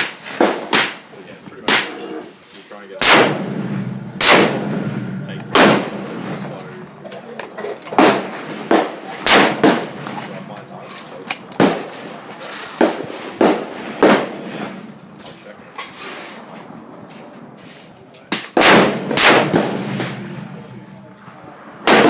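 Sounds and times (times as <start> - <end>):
rifle shots: 0.0 - 2.1, 3.0 - 6.6, 8.0 - 10.4, 11.5 - 12.2, 12.8 - 14.8, 18.4 - 20.5.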